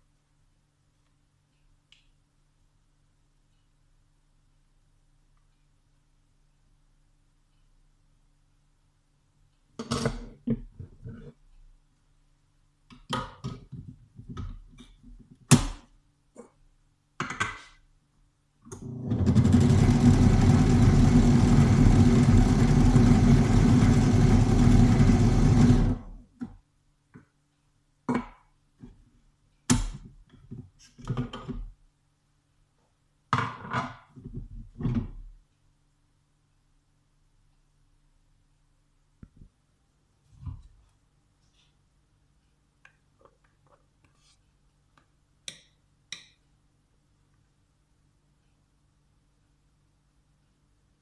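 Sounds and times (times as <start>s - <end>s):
kitchen appliance motor running: 18.8s - 26.2s.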